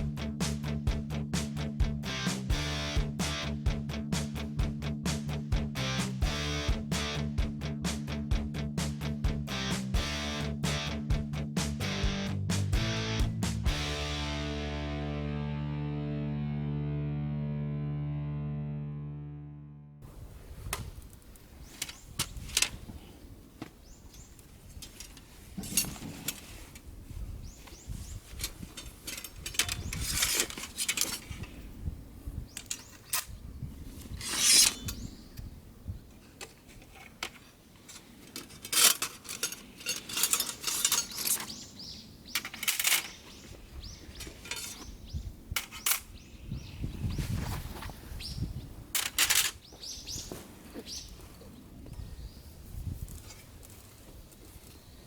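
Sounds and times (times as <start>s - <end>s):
metal gear clinking and clattering: 38.6s - 41.5s.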